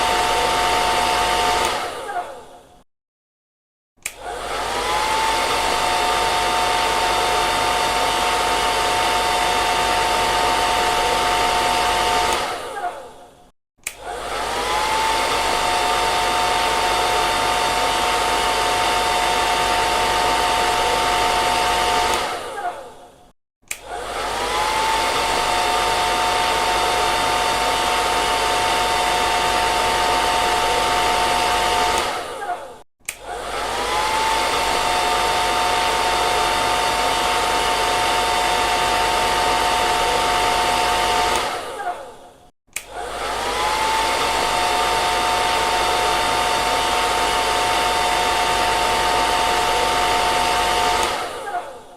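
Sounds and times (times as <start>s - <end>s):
hair dryer blowing: 0.0s - 2.7s, 4.0s - 51.9s
hair dryer switch click: 1.6s - 1.8s, 4.0s - 4.9s, 12.3s - 12.6s, 13.8s - 14.2s, 22.1s - 22.4s, 23.7s - 24.0s, 32.0s - 32.2s, 33.0s - 33.6s, 41.3s - 41.7s, 42.7s - 43.2s, 50.9s - 51.4s.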